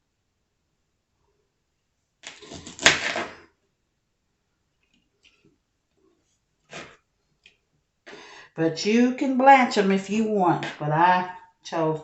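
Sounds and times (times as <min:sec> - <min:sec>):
knife scraping on cutting board: 0:02.2 - 0:03.3, 0:06.7 - 0:06.9.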